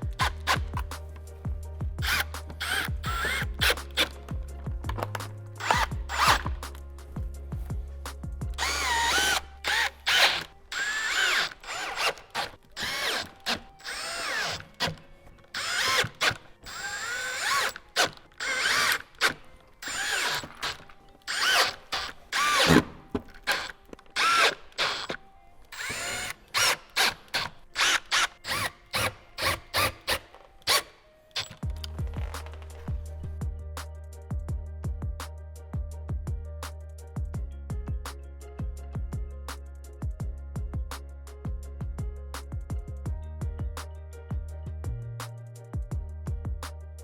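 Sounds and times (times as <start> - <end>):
cordless drill driving screws: 0.0 - 1.4, 2.0 - 7.1, 8.5 - 32.9.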